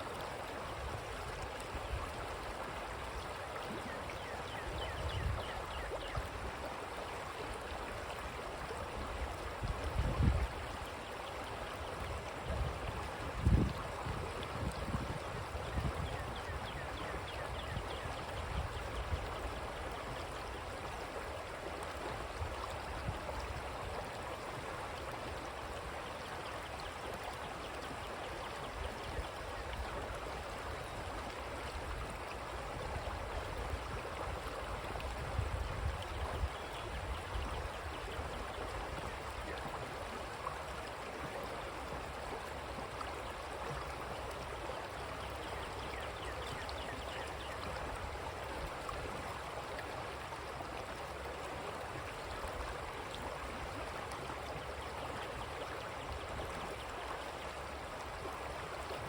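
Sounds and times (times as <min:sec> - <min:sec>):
creek water gurgling: 0:00.0 - 0:59.0.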